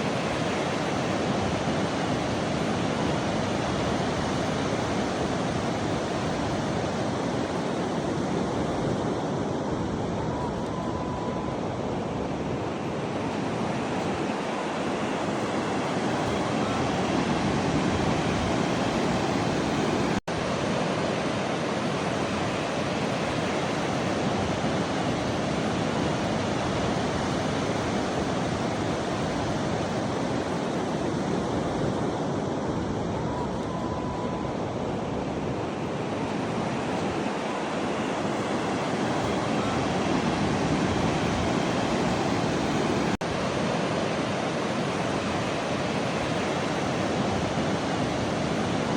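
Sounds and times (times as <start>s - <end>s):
waves breaking: 0.0s - 48.9s.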